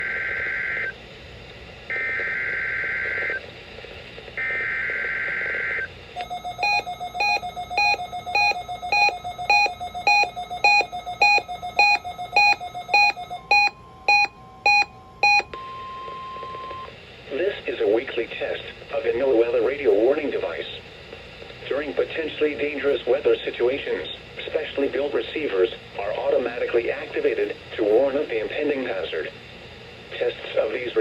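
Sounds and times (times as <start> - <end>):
two-tone digital data bursts: 6.2 - 15.4
rapid electronic alert beeps: 6.2 - 15.5.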